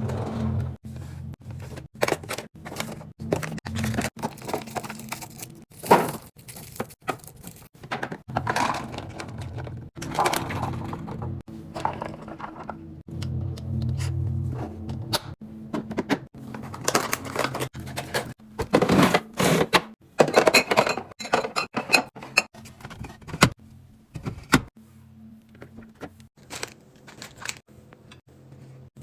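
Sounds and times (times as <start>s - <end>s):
items being moved about: 0.0s - 13.1s, 15.7s - 24.7s, 25.5s - 28.9s.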